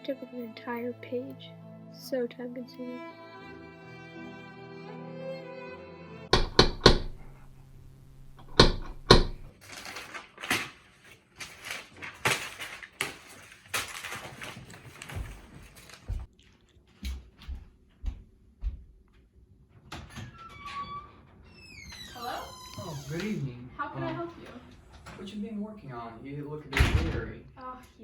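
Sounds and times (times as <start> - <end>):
sharp knocks and taps: 6.3 - 7.5, 8.1 - 9.5
dull thumps: 6.3 - 9.5
rustling handling noise: 9.4 - 17.0.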